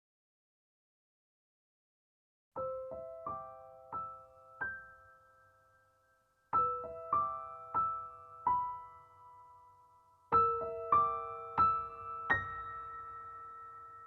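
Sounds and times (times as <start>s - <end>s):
slow solo piano: 2.6s - 14.0s.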